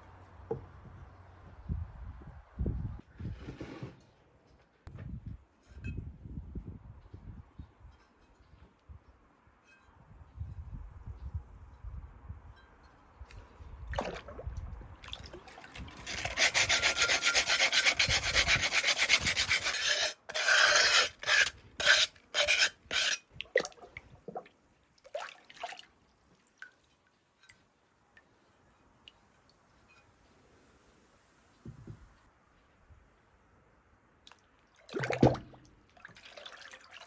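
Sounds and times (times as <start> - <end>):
sandpaper rubbing on pottery: 16.0 - 23.2.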